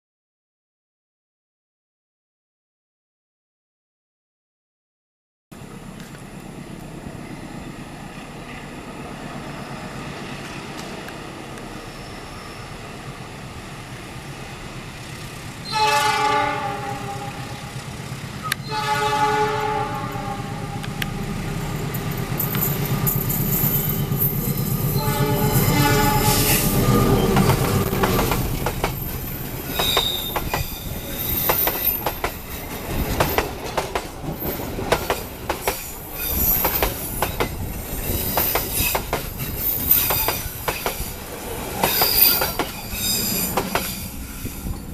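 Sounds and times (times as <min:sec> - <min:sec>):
locomotive horn blasts: 0:15.6 - 0:17.7, 0:18.4 - 0:21.4, 0:25.0 - 0:28.3
locomotive engine rumble: 0:16.9 - 0:44.9
train wheels clattering over rail joints: 0:27.2 - 0:44.9.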